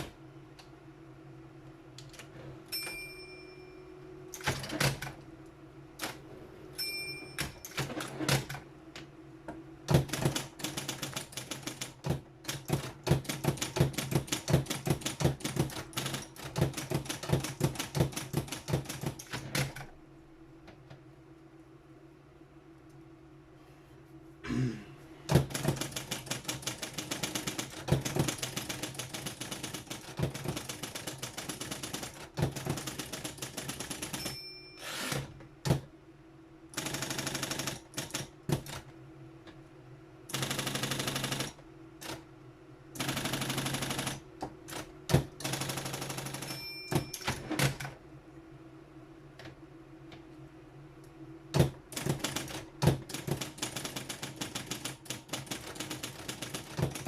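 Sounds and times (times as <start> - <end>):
typewriter motor hum: 9.9 - 19.9, 25.3 - 35.4, 36.7 - 38.8, 40.3 - 42.2, 43.0 - 46.6, 51.6 - 57.0.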